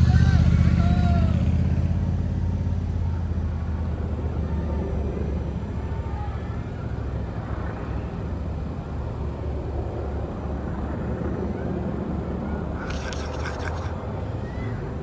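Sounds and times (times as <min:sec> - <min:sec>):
vehicle engines rumbling: 0:00.0 - 0:15.0
brief rapid clatter: 0:12.8 - 0:14.0.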